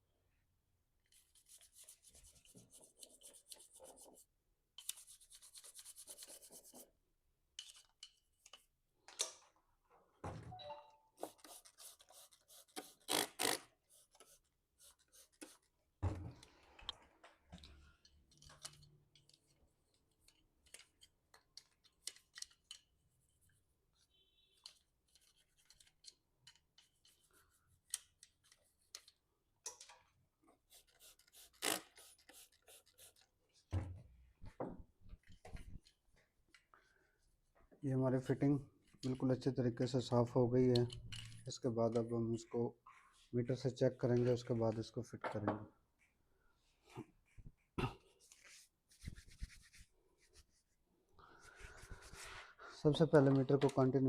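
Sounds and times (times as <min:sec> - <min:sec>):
clicks and knocks of parts handled: 0:07.5 - 0:09.6, 0:16.3 - 0:23.0, 0:24.6 - 0:30.2, 0:40.7 - 0:42.1
brush scrubbing plastic part: 0:30.6 - 0:33.3.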